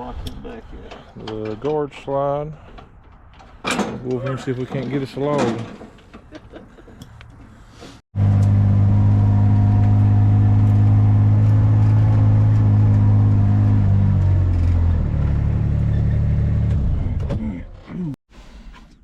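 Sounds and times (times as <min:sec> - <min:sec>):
engine running at high speed: 0:08.2 - 0:17.3.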